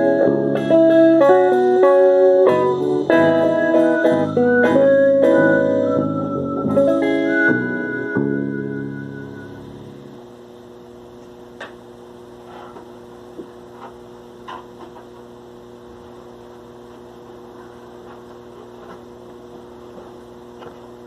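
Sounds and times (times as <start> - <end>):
electrical mains hum: 0.0 - 21.0.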